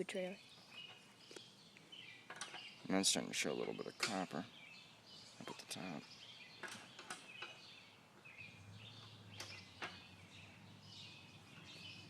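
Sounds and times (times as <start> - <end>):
bird chirps: 0.2 - 12.0.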